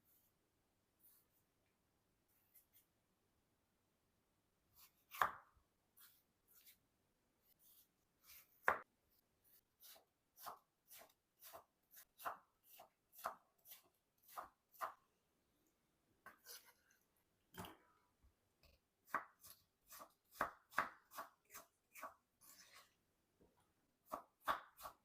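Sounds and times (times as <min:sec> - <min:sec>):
knife chopping on cutting board: 0:04.8 - 0:06.8, 0:07.6 - 0:08.9, 0:09.8 - 0:15.0, 0:19.0 - 0:22.2, 0:24.1 - 0:25.0.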